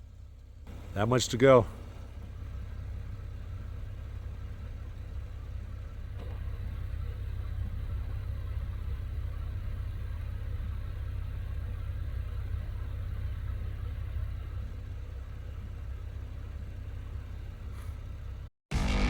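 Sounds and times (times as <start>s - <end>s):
car engine and road rumble: 0.0s - 19.0s.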